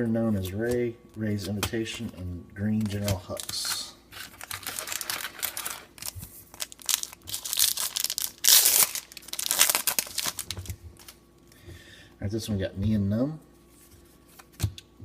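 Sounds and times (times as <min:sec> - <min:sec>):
card pack wrapper tearing and crinkling: 0:02.8 - 0:11.2.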